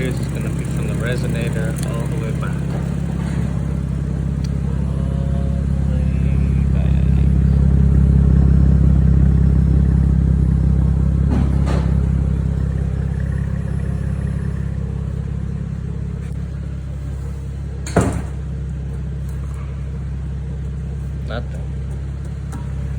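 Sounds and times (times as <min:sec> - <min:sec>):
car engine idling: 0:00.0 - 0:22.9.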